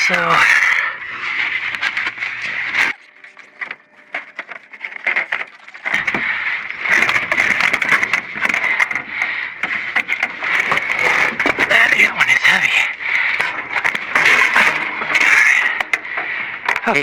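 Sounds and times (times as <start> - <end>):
heavy boxes scraping and knocking: 4.0 - 17.0.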